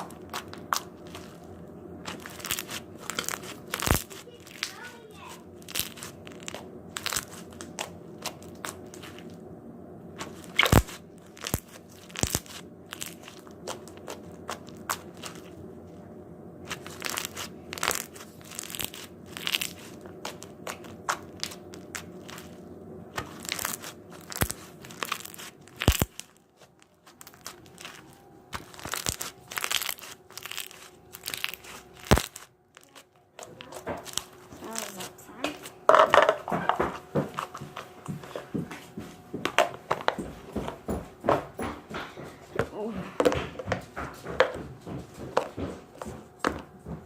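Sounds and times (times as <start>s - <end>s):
slime crunching: 0.0s - 9.4s, 10.1s - 16.0s, 16.6s - 41.3s
faint steady hum: 0.0s - 47.0s
slime clicking and popping: 2.1s - 4.9s, 5.6s - 9.2s, 10.2s - 15.5s, 16.7s - 22.6s, 23.2s - 36.1s.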